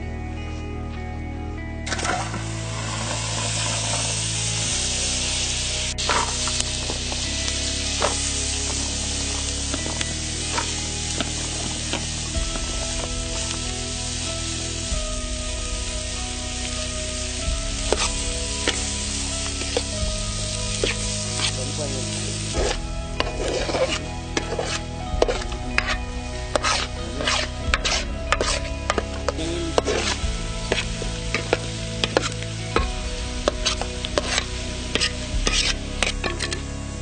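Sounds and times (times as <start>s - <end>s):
food sizzling in a pot: 1.9s - 37.0s
spoon scraping a pot: 22.6s - 26.0s, 33.6s - 36.6s.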